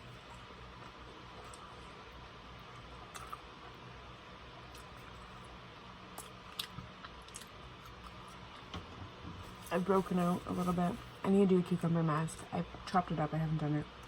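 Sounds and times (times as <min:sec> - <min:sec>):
faint low hum: 0:00.0 - 0:14.0
person eating mouth noises: 0:02.8 - 0:03.5.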